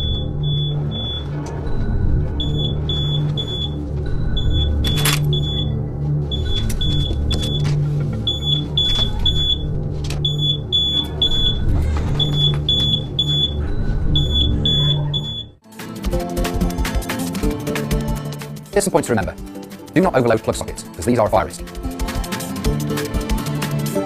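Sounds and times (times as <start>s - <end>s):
low rumbling hum: 0.0s - 15.5s
smoke alarm beeping: 0.0s - 15.6s.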